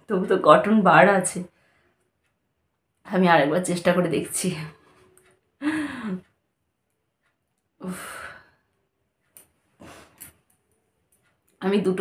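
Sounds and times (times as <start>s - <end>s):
woman sighing: 5.6s - 6.3s.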